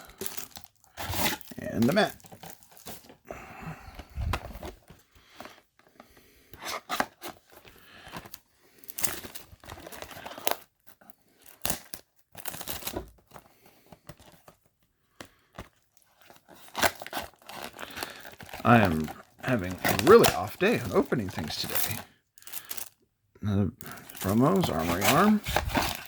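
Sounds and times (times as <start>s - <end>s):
packaging tearing and crinkling: 0.0s - 3.2s, 6.6s - 13.4s, 15.6s - 22.9s, 23.8s - 26.0s.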